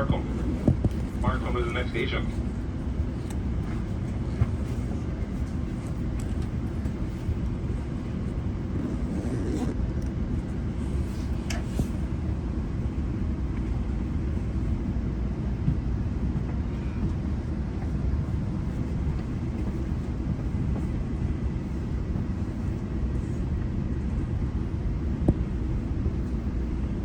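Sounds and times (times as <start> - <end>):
train wheels rumbling on rails: 0.0 - 27.0.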